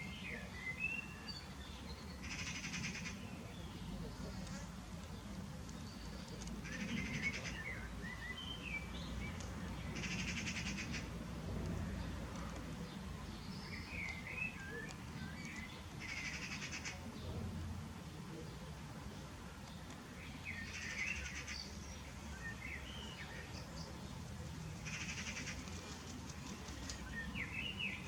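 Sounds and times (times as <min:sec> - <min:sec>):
small birds chirping: 0:00.0 - 0:28.0
buzzy bird chatter: 0:02.0 - 0:04.7, 0:05.6 - 0:07.8, 0:09.3 - 0:11.2, 0:12.8 - 0:17.2, 0:19.8 - 0:22.0, 0:24.8 - 0:28.0.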